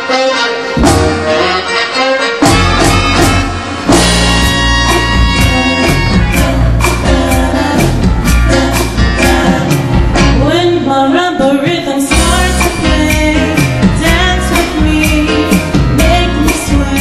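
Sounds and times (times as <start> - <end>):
song with sung melody and beat: 3.9 - 17.0.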